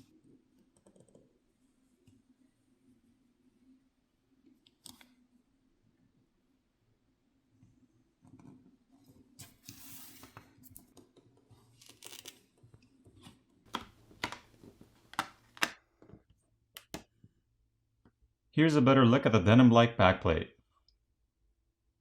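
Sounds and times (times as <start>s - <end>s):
sharp plastic clicks: 13.7s - 15.8s.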